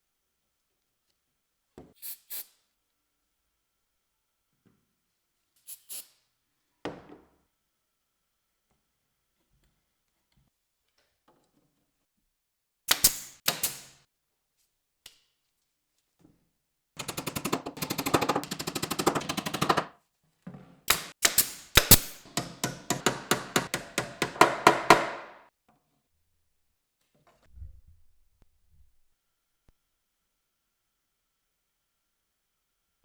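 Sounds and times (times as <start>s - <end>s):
workshop tool knocking: 17.0s - 19.9s, 20.9s - 25.4s.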